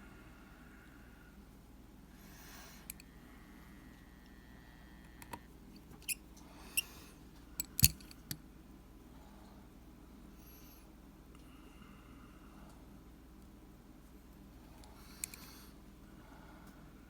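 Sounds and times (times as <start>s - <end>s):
screwdriver clicking on metal plate: 7.6s - 8.4s.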